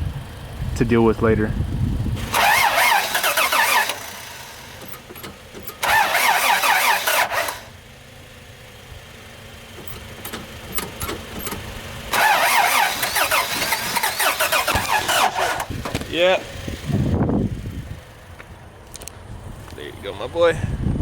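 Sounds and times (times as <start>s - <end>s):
starter motor cranking: 2.2s - 7.8s, 9.7s - 17.1s.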